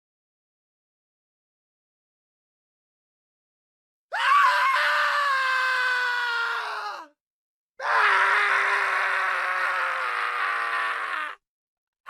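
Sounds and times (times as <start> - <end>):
man screaming: 7.8 - 11.4.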